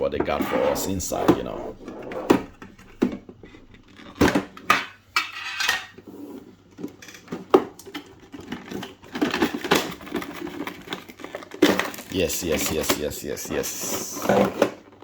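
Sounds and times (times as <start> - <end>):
packaging rustling and scraping: 0.3 - 4.7, 6.0 - 15.0
packaging clicks and knocks: 6.7 - 13.0.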